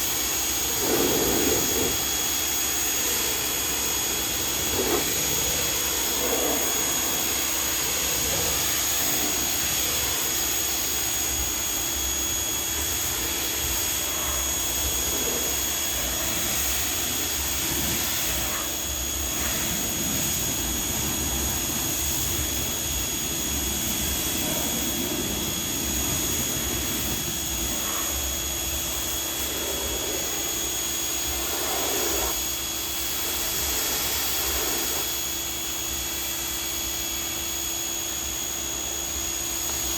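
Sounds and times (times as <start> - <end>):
pressure washer pump humming: 0.0 - 39.9
water spray hissing: 0.6 - 2.2, 2.9 - 10.2, 31.2 - 32.4, 33.4 - 35.1.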